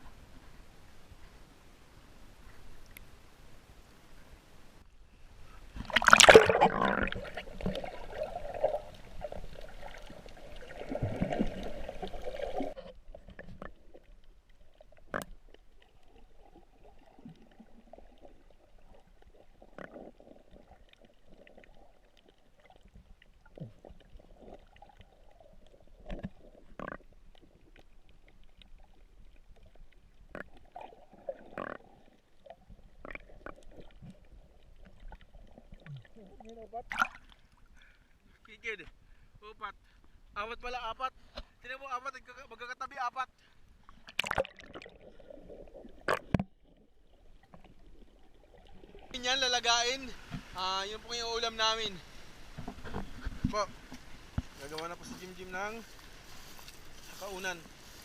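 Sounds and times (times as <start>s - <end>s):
water splashing and sloshing: 5.4s - 38.5s, 43.4s - 58.0s.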